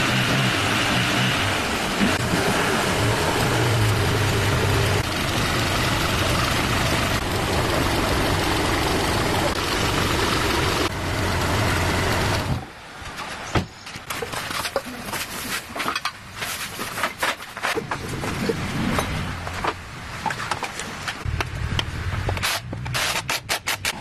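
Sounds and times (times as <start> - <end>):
car engine running: 0.0 - 12.7.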